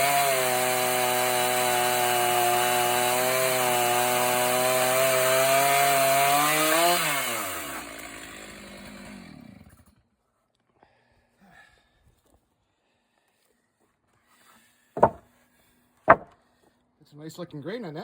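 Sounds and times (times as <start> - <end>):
chainsaw cutting log: 0.0 - 9.9, 15.0 - 15.2, 16.1 - 16.3.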